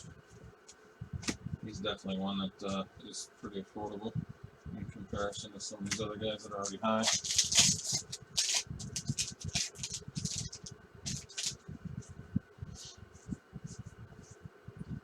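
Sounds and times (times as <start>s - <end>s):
cards flipped by hand: 6.6s - 11.6s.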